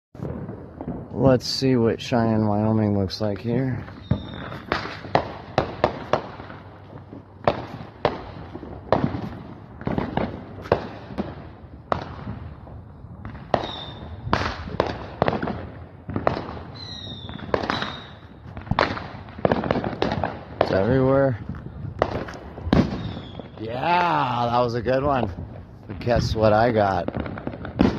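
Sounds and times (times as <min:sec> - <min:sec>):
fireworks bangs and pops: 0:00.2 - 0:27.9
high firework whistles: 0:03.8 - 0:06.5, 0:13.5 - 0:15.0, 0:16.4 - 0:19.9, 0:22.0 - 0:23.6.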